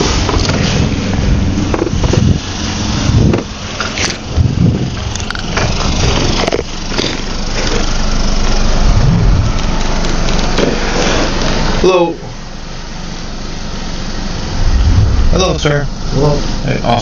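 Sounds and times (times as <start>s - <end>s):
wind noise: 0.0s - 3.6s, 4.3s - 5.1s, 8.8s - 9.7s, 14.4s - 15.7s
road traffic rumble: 0.0s - 17.0s.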